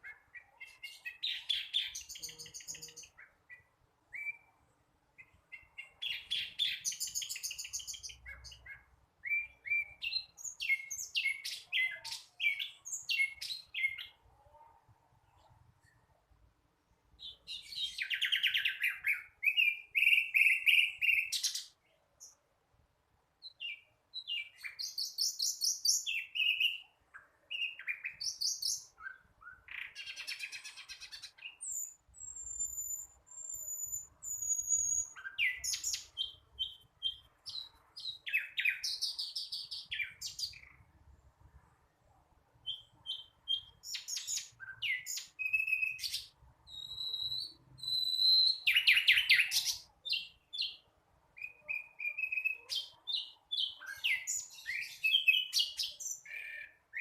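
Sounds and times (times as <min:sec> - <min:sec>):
thin high bird whistles: 0:31.6 - 0:36.1, 0:42.7 - 0:49.7.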